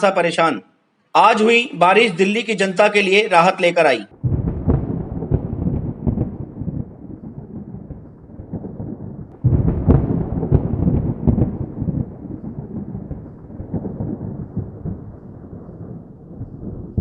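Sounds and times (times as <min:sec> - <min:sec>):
thunder rumbling: 0:04.1 - 0:17.0.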